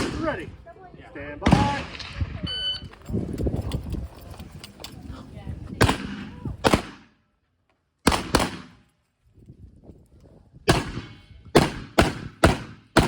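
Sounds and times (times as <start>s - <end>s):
shotgun shots echoing: 0.0s - 0.4s, 1.4s - 2.2s, 5.8s - 7.1s, 8.0s - 8.8s, 10.7s - 13.0s.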